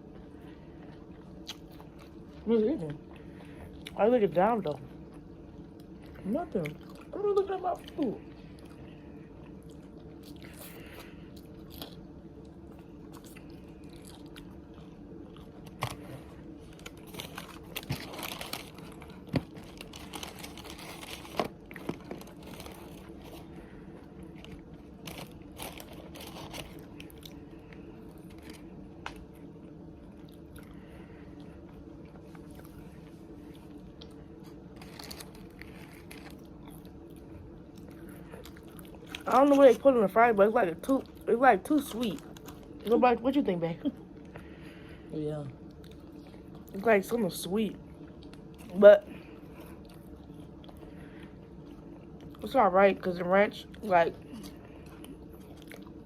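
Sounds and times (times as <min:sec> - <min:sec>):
person chewing crunchy food: 0:00.0 - 0:04.0, 0:04.9 - 0:07.2, 0:07.8 - 0:39.7, 0:45.6 - 0:46.8, 0:47.9 - 0:52.4, 0:54.2 - 0:56.0
steady low hum: 0:00.0 - 0:56.0.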